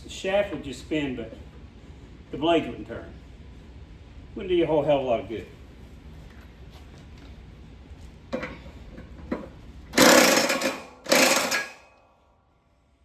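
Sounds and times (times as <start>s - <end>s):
electric impact wrench: 9.9s - 12.0s.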